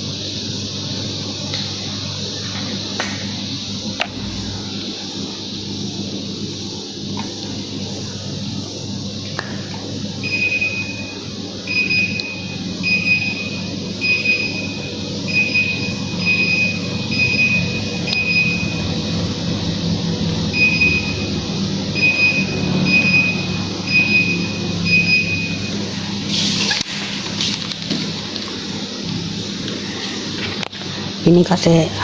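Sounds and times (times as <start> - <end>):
low machine hum: 0.0 - 32.0
high electronic beep: 10.3 - 18.9, 20.6 - 21.3, 22.0 - 25.7.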